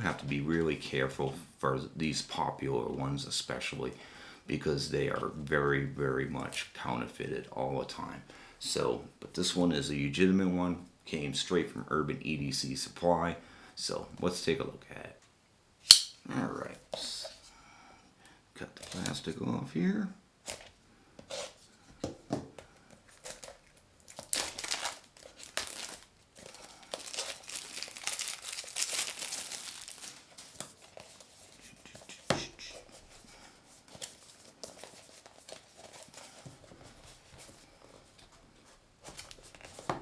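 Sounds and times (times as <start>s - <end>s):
plastic packaging tearing and crinkling: 23.2s - 31.3s.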